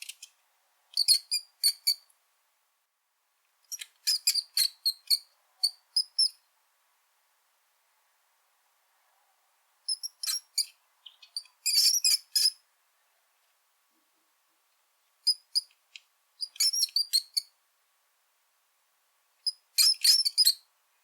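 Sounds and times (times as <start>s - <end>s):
rat squeaking: 0.9s - 2.1s, 3.7s - 6.4s, 9.9s - 12.6s, 16.4s - 17.5s, 19.5s - 20.6s.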